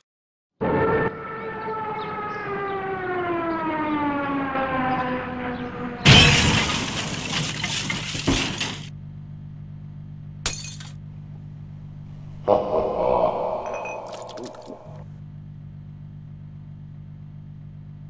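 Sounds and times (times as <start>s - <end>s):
loud shattering crash: 6.0s - 8.9s
low steady hum: 9.0s - 18.0s.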